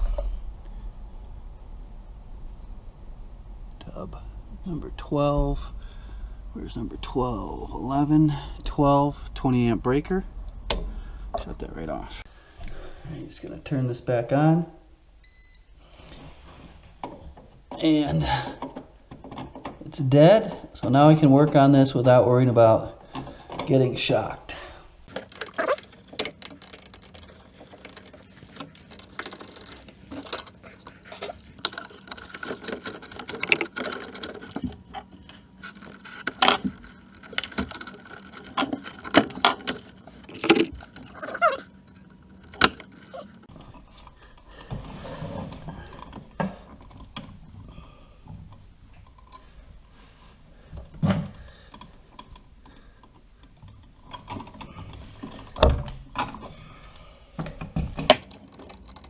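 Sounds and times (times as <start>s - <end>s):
small metallic clicks and clinks: 25.1s - 43.5s, 58.1s - 59.0s.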